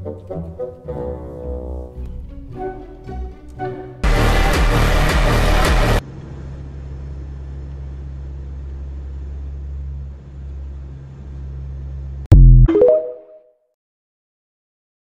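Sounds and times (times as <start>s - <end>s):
vehicle running drone: 0.0s - 12.3s
loud rushing noise: 4.0s - 6.0s
sudden loud burst: 4.0s - 6.0s.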